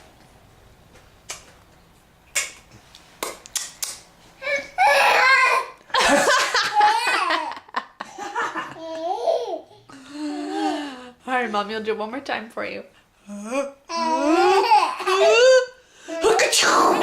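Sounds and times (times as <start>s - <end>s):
baby laughing: 4.4s - 10.8s, 13.9s - 15.7s
people laughing: 5.9s - 9.0s.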